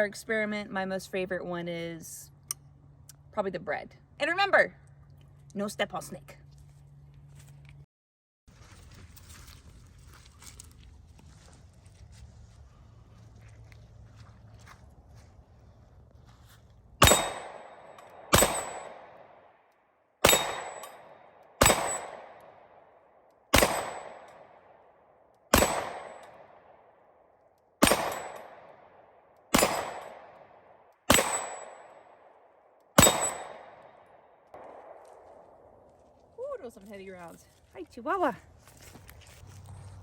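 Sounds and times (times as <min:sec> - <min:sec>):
gunshots echoing: 0:17.0 - 0:19.4, 0:20.2 - 0:22.9, 0:23.5 - 0:24.8, 0:25.5 - 0:26.8, 0:27.8 - 0:35.9.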